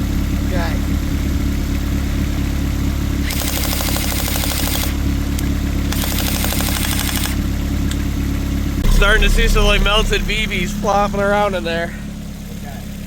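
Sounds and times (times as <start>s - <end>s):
car engine idling: 0.0s - 13.0s
airsoft gun firing bursts: 3.3s - 5.0s, 5.9s - 7.4s.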